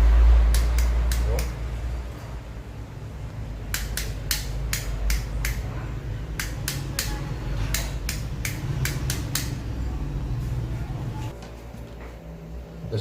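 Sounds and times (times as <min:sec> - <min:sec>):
light switches clicking: 0:00.5 - 0:01.6, 0:03.6 - 0:09.8.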